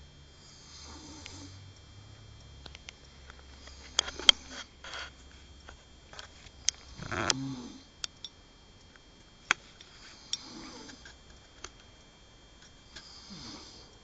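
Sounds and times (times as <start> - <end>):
person snoring: 0.4 - 1.6, 6.8 - 7.9, 10.2 - 11.0, 13.0 - 13.9.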